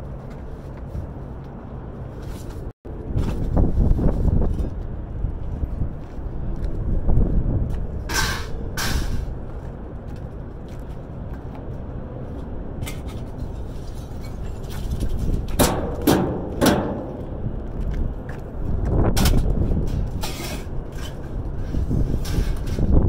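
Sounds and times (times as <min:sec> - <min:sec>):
wind rumbling on microphone: 0:00.0 - 0:23.0
scrap metal clanking and scraping: 0:08.0 - 0:09.4, 0:12.8 - 0:17.4, 0:19.1 - 0:23.0.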